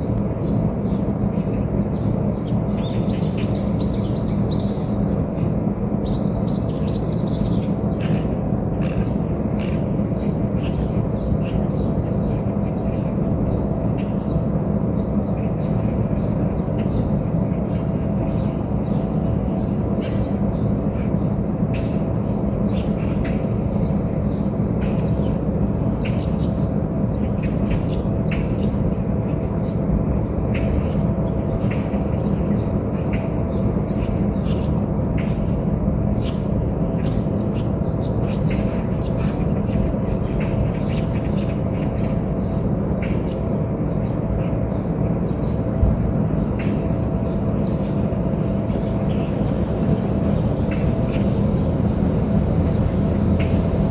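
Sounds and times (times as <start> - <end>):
birds chirping: 36.2 - 53.9.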